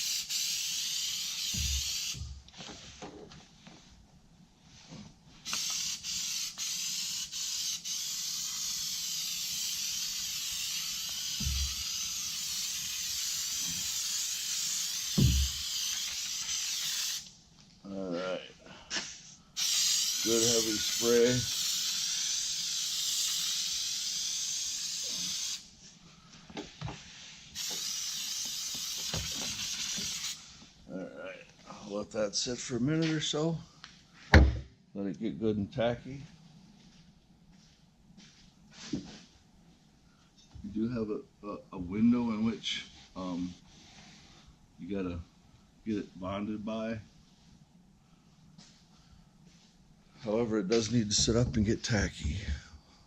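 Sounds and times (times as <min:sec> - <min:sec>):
aerosol can spraying: 0:00.0 - 0:02.3, 0:05.4 - 0:17.3, 0:19.6 - 0:25.7, 0:27.5 - 0:30.5.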